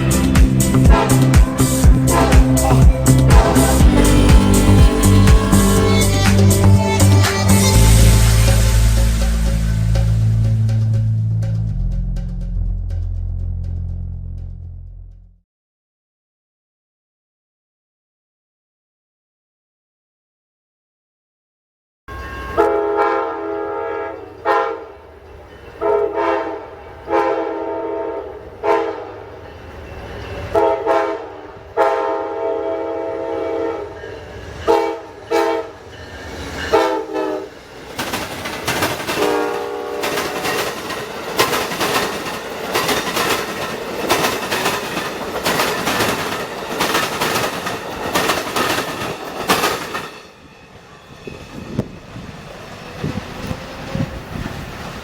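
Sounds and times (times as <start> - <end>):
train wheels clacking over rails: 0.4 - 10.2, 34.2 - 50.4
locomotive air horn blasts: 0.6 - 9.0, 22.1 - 25.0, 25.8 - 29.2, 30.6 - 34.0, 34.7 - 35.8, 36.7 - 37.5, 39.1 - 40.6.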